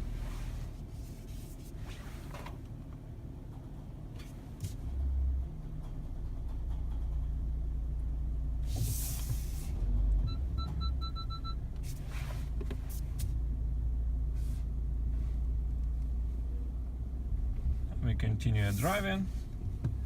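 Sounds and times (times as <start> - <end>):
car cabin rumble: 0.0 - 20.0
video audio through car speakers: 6.6 - 20.0.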